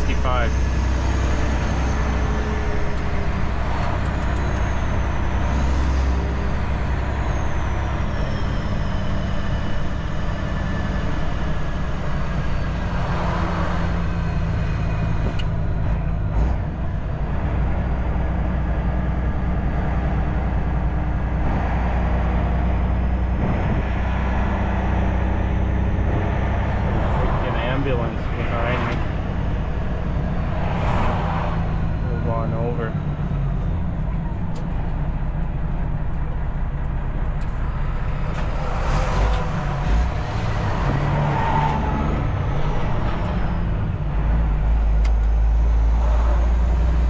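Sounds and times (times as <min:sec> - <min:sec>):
road and cab noise: 0:00.0 - 0:47.0
truck diesel engine running: 0:00.0 - 0:47.0.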